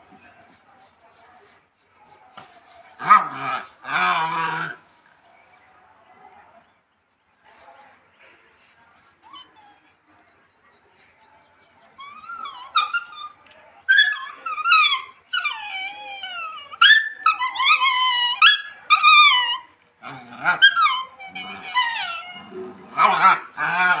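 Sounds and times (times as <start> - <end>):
puppies whining and whimpering: 11.9 - 19.7, 20.3 - 24.0.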